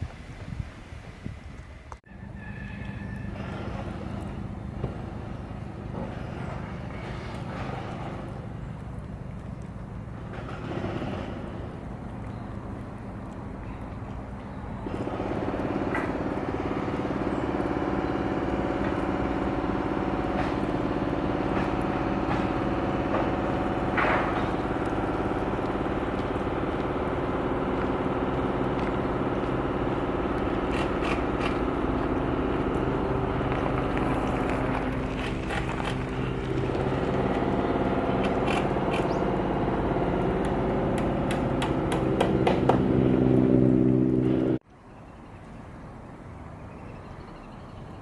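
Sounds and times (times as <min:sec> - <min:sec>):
mechanical drone with held tones: 0:14.2 - 0:44.6.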